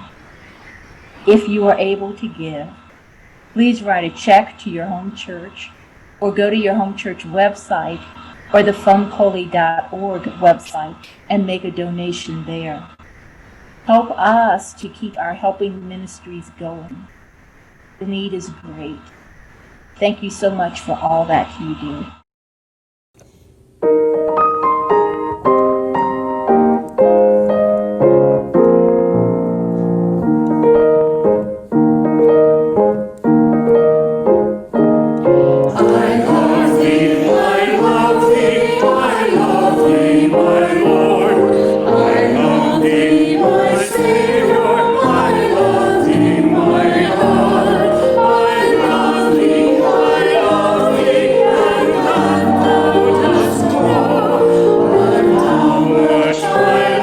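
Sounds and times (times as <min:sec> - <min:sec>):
choir singing: 0:00.0 - 0:22.1, 0:35.2 - 0:57.0
piano: 0:23.8 - 0:57.0.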